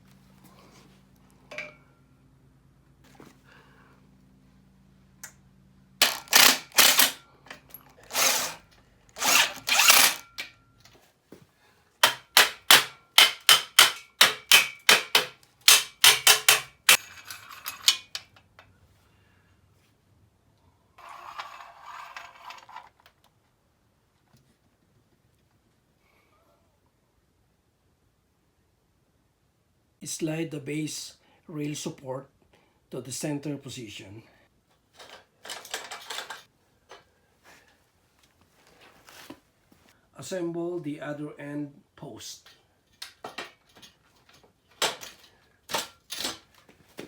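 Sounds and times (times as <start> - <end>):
power driver driving screws: 6.0 - 7.2, 8.0 - 10.5, 12.0 - 17.0.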